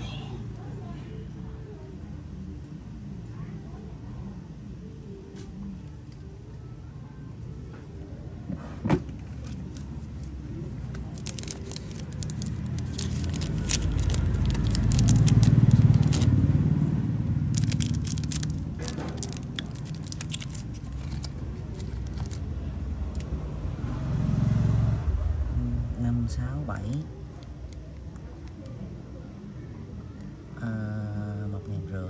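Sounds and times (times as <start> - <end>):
low vehicle rumble: 9.4 - 26.5.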